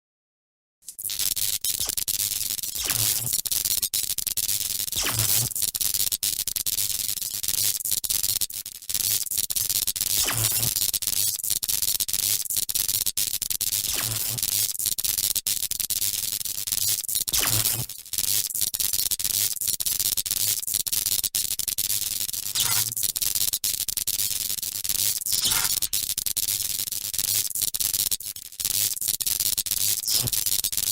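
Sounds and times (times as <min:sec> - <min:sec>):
electrical crackling static: 0:00.9 - 0:03.9, 0:04.8 - 0:08.4, 0:22.4 - 0:23.2, 0:25.0 - 0:26.6.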